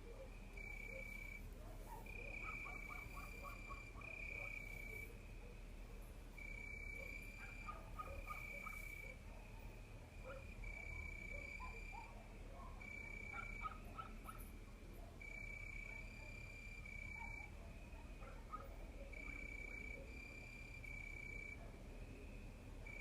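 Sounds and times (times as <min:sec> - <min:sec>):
faint animal chirps: 0:06.4 - 0:09.2.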